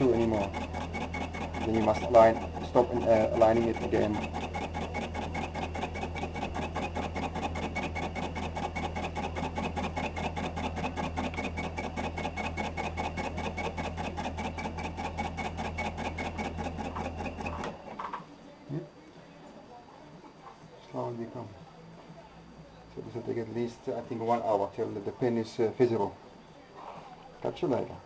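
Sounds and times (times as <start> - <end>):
metal lathe cutting: 0.0 - 8.5.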